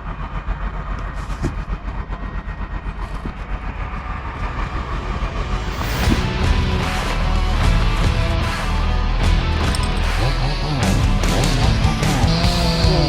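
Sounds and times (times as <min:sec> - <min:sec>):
engine chugging: 0:00.0 - 0:13.0
music: 0:03.6 - 0:13.0.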